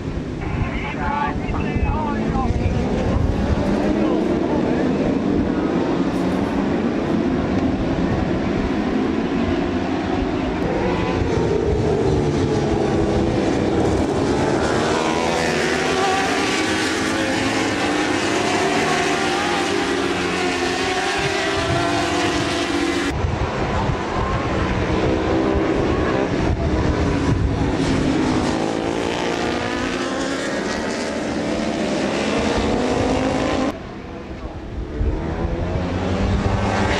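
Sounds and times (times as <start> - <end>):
racing motorcycle engines revving: 0.0 - 36.9.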